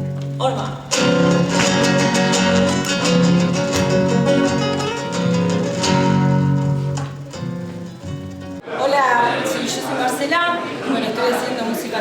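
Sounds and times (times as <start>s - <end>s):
acoustic guitars folk music: 0.0s - 8.6s.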